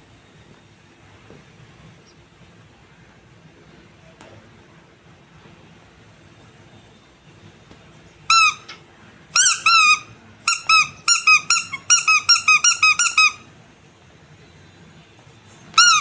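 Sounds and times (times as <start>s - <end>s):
squeaky toy squeaking: 8.3s - 8.8s, 9.4s - 13.5s, 15.8s - 16.0s.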